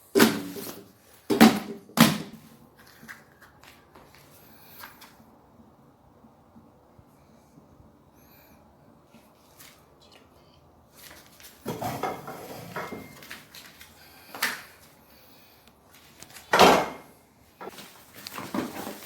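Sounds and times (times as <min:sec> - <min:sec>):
objects knocking and clattering: 0:11.6 - 0:13.3, 0:16.5 - 0:19.0.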